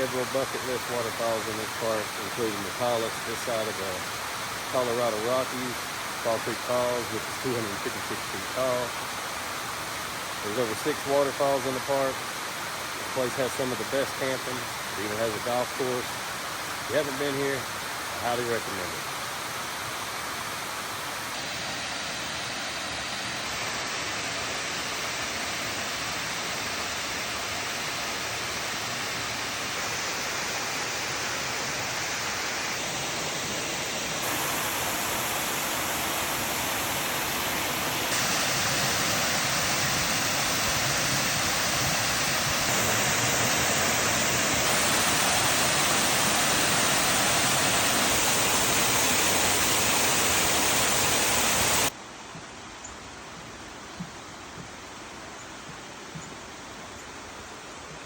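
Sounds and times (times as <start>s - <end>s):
waterfall rushing: 0.0s - 52.0s.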